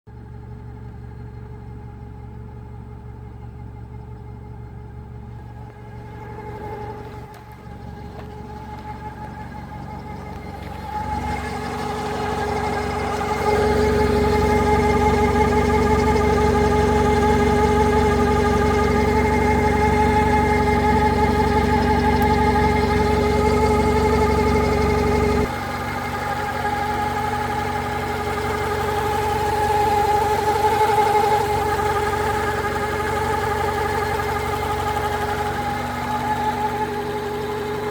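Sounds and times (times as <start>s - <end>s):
car engine running: 0.1s - 37.9s
whirring engine whine: 0.1s - 37.9s.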